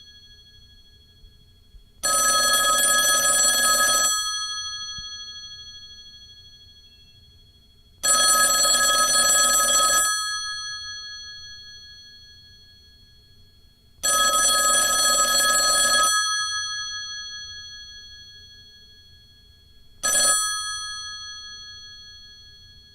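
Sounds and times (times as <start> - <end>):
telephone bell ringing: 2.0 - 6.5, 8.0 - 12.6, 14.0 - 19.2, 20.0 - 22.9.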